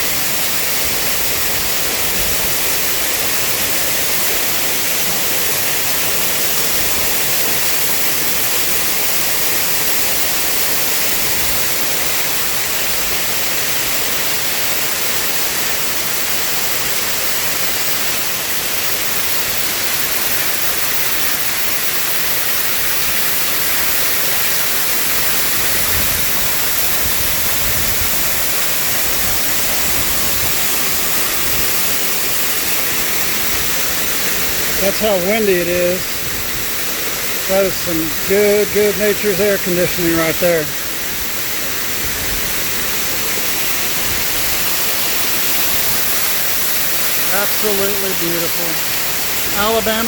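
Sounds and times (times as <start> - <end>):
strong wind blowing: 25.0 - 44.7
wind gusts buffeting microphone: 25.1 - 31.9.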